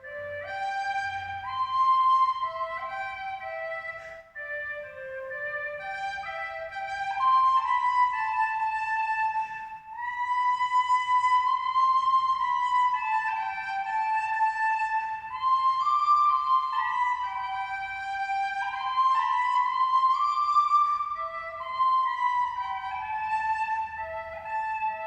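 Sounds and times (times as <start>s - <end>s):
flute-like solo melody: 0.0s - 25.0s.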